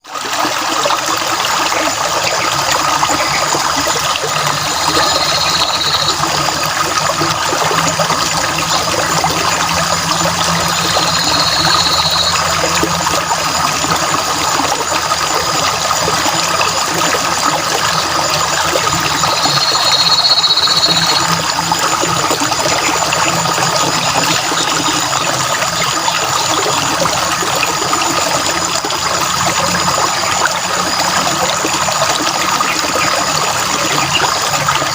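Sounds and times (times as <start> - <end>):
stream water trickling: 0.0 - 34.9
high bird notes: 4.4 - 6.3, 10.6 - 12.5, 19.2 - 21.3.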